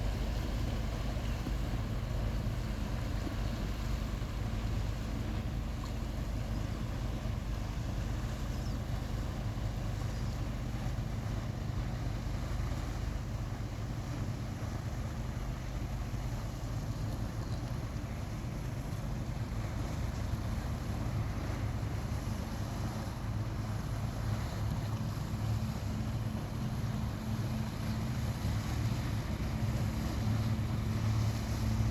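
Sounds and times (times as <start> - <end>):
boat engine droning: 0.0 - 31.9.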